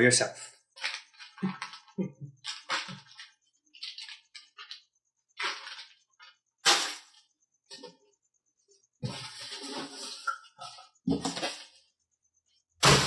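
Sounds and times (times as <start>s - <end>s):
plastic bags crinkling: 0.8s - 4.8s.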